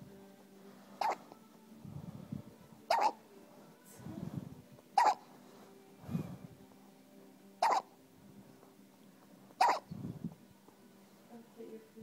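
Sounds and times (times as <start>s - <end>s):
soft low sound: 0.0s - 11.4s
baby hiccuping: 1.0s - 1.2s, 2.9s - 3.2s, 5.0s - 5.2s, 7.6s - 7.9s, 9.6s - 9.9s.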